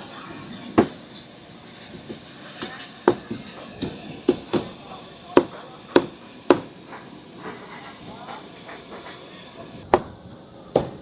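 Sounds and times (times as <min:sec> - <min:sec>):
cleaver chopping on a block: 0:05.4 - 0:06.7, 0:10.8 - 0:11.0.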